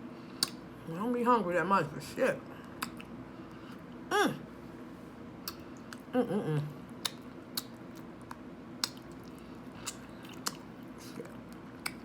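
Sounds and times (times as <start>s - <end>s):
sharp mouth clicks: 0.4s - 0.6s, 2.7s - 3.2s, 5.4s - 6.1s, 7.0s - 10.7s
person chewing food: 2.6s - 4.0s, 5.4s - 6.1s, 6.9s - 12.0s.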